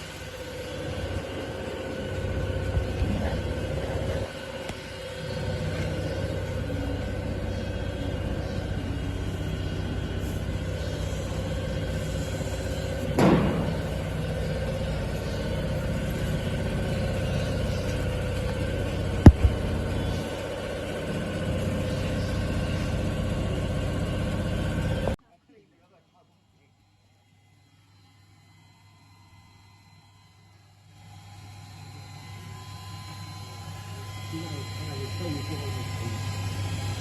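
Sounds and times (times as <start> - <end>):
planer-sander humming: 0.0 - 25.2, 31.0 - 37.0
sharp knocks: 13.2 - 14.4, 19.3 - 19.6.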